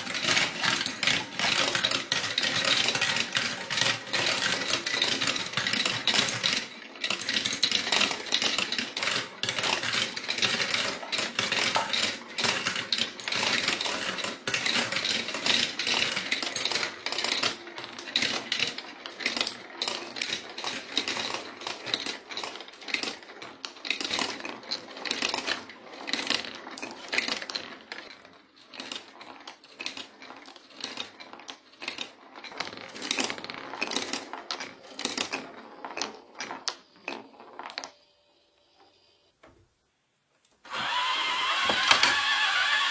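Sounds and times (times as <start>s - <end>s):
marbles rolling and clattering: 0.0s - 38.1s, 40.7s - 42.9s.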